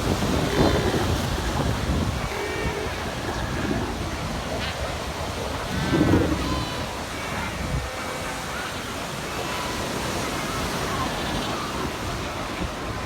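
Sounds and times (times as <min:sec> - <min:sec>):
faint seal calls: 0:00.0 - 0:08.6
surf: 0:00.0 - 0:13.0
wind: 0:00.0 - 0:13.0.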